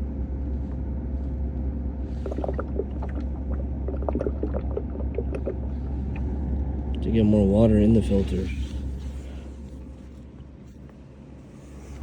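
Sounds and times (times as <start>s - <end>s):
steady low hum: 0.0s - 12.0s
water gurgling in humidifier: 2.1s - 8.0s.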